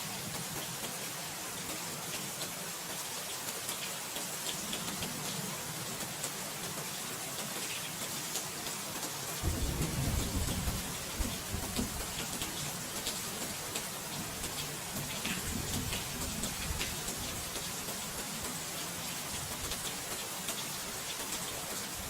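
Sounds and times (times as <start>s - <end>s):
steady rain falling: 0.0s - 22.0s
rain drop ticks: 7.4s - 18.7s
thunder rumble: 9.4s - 12.5s.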